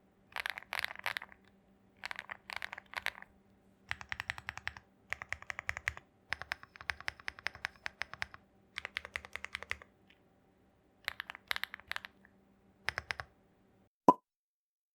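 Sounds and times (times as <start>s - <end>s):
typing on mechanical keyboard: 0.3s - 3.3s, 3.9s - 9.9s, 11.0s - 13.3s.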